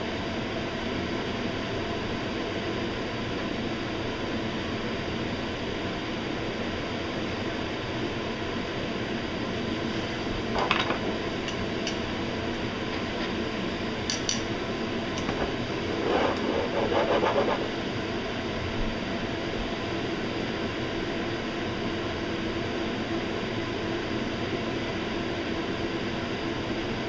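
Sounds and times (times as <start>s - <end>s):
tongs scraping ceramic pot: 15.4s - 17.8s.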